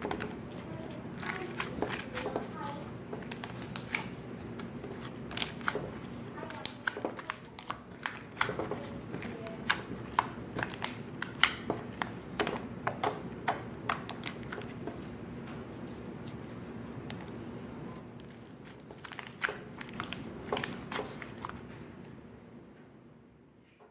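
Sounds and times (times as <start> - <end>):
slime squished by hand: 0.0 - 17.4, 18.0 - 21.7.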